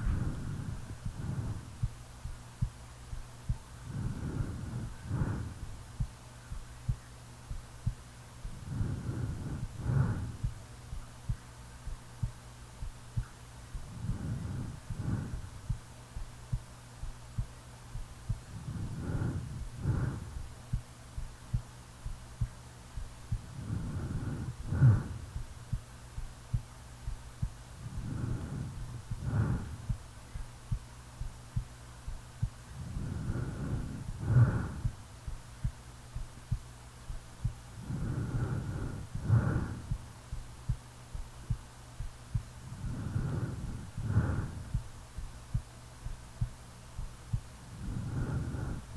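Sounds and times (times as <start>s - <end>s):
snoring breaths: 0.0s - 2.0s, 3.8s - 6.1s, 8.4s - 10.6s, 13.2s - 15.8s, 18.3s - 20.6s, 23.0s - 25.8s, 27.1s - 30.8s, 32.1s - 35.4s, 37.4s - 40.4s, 42.3s - 45.0s, 46.4s - 48.9s
heartbeat thumps: 0.0s - 48.9s.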